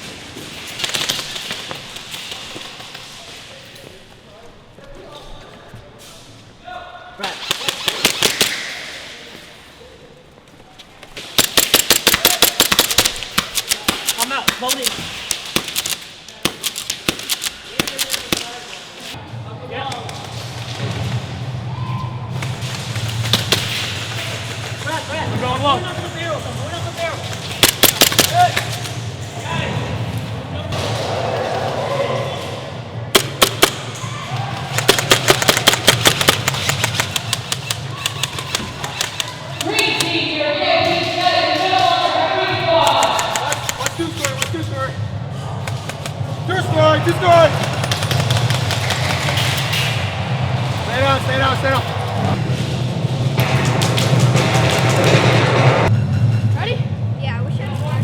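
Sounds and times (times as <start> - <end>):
airsoft guns firing full-auto: 7.4 - 8.6, 11.2 - 18.5, 27.4 - 29.0, 33.1 - 34.0, 34.6 - 40.1, 42.8 - 44.7, 47.0 - 49.9.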